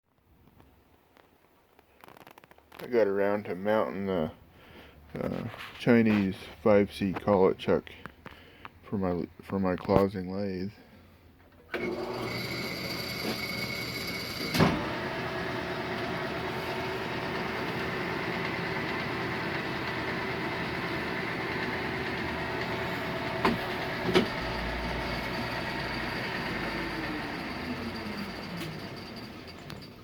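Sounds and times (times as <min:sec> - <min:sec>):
metal lathe motor hum: 0:11.8 - 0:30.0.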